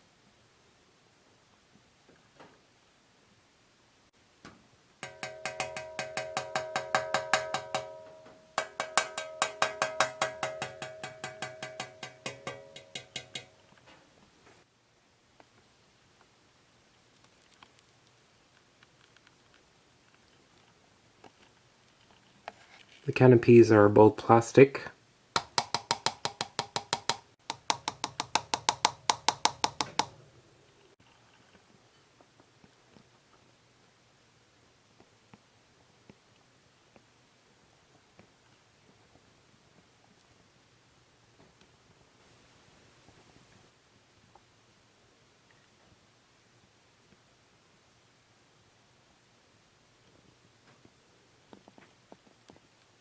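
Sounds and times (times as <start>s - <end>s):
rapid tapping on hollow plastic: 5.0s - 8.0s, 8.6s - 13.5s, 25.4s - 30.2s
metal fan blades ringing: 5.0s - 13.6s.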